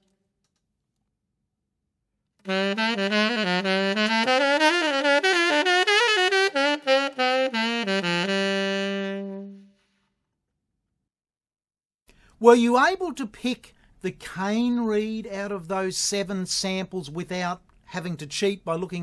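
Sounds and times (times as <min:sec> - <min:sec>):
saxophone jazz lick: 0:02.4 - 0:09.9.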